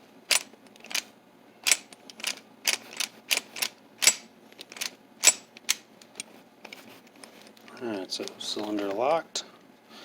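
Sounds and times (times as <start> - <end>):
sharp metallic lock clicks: 1.7 - 5.8.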